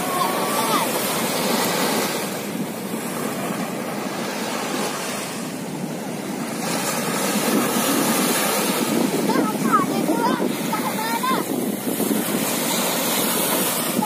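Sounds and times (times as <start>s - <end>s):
sea waves washing onto beach: 0.0s - 14.0s.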